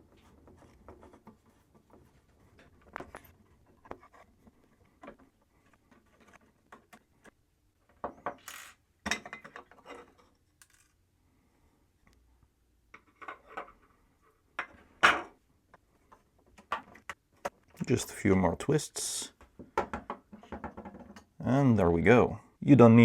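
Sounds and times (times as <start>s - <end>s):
small clicks and scrapes: 0.0s - 7.4s.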